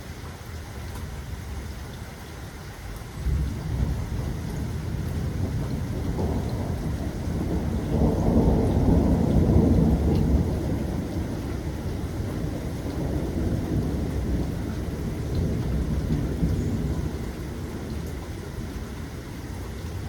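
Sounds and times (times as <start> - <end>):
steady rain: 0.0 - 20.0
thunder rolling: 3.2 - 19.0.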